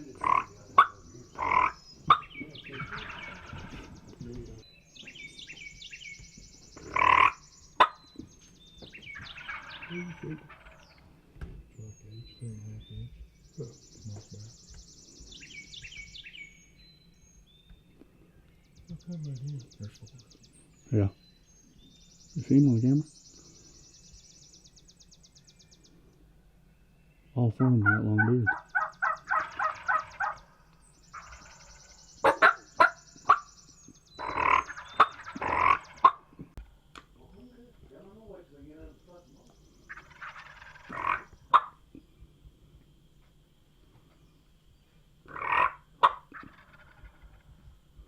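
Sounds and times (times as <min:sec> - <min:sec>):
songbirds trilling: 0:00.0 - 0:48.0
turkey gobbling: 0:00.1 - 0:04.0, 0:06.8 - 0:08.3, 0:08.9 - 0:11.1, 0:27.6 - 0:33.5, 0:34.2 - 0:36.4, 0:39.9 - 0:41.9, 0:45.3 - 0:47.7.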